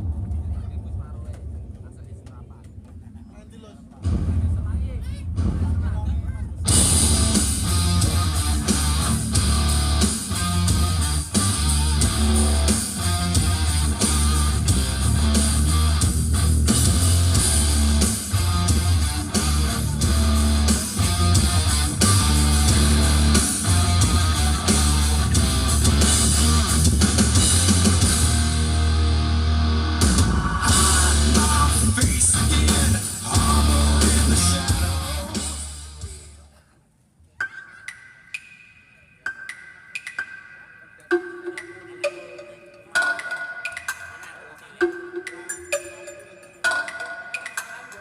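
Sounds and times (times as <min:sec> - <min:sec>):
booming bass line: 0:04.0 - 0:36.3
rock music: 0:06.6 - 0:36.4.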